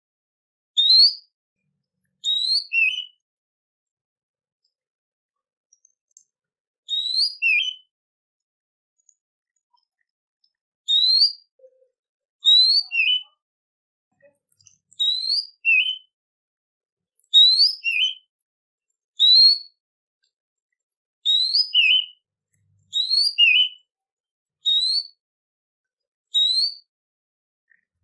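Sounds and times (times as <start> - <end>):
songbird whistling phrase: 0.8 - 1.2, 2.2 - 3.2, 6.9 - 7.9, 10.9 - 11.5, 12.4 - 13.4, 15.0 - 16.1, 17.4 - 18.3, 19.2 - 19.6, 21.3 - 22.2, 22.9 - 23.8, 24.7 - 25.2, 26.4 - 26.9.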